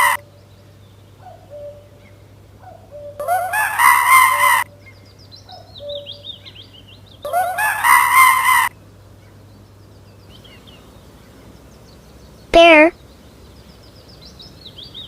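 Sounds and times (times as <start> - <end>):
monkey calls: 0.0 - 0.2, 2.7 - 4.7, 7.3 - 8.7.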